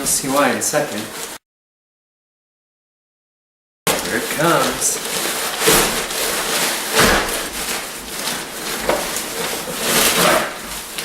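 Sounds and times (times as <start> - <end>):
plastic wrapping rustling: 0.0 - 1.4, 3.9 - 11.0.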